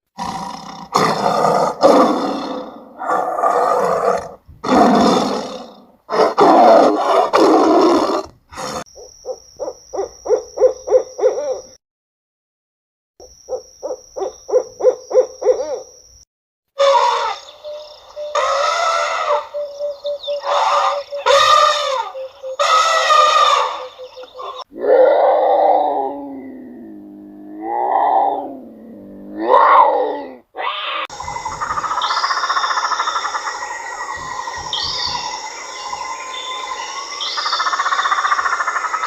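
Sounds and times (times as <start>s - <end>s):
animal roaring: 0.2s - 8.8s, 24.7s - 31.1s
rapid low hoots: 16.8s - 39.0s.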